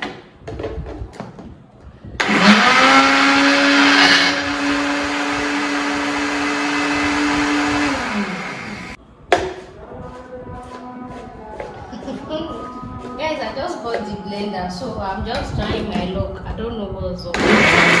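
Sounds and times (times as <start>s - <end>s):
blender motor whirring: 2.2s - 9.0s, 17.4s - 18.0s.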